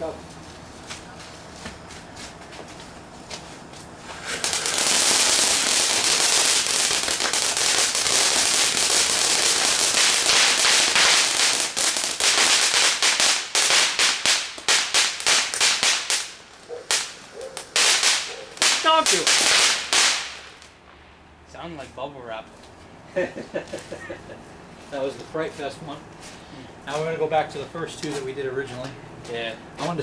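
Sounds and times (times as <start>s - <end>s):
firework crackling pops: 3.8s - 21.0s.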